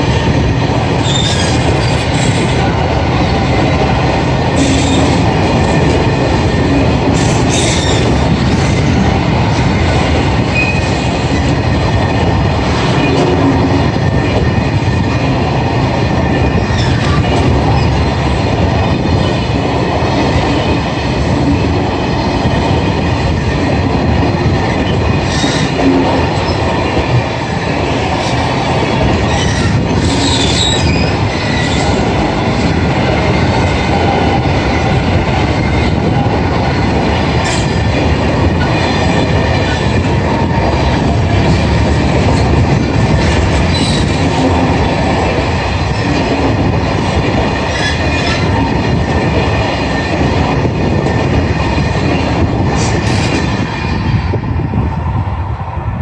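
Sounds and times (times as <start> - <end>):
freight train rumbling: 0.0 - 56.0
wheel squeals: 1.0 - 2.0, 29.3 - 32.0.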